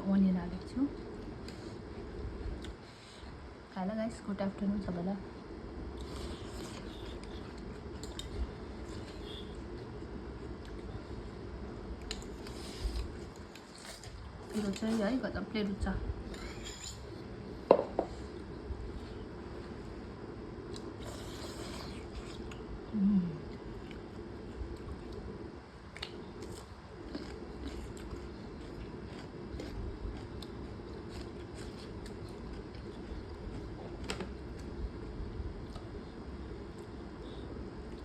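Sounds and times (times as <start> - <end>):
person chewing and biting: 25.9 - 34.7.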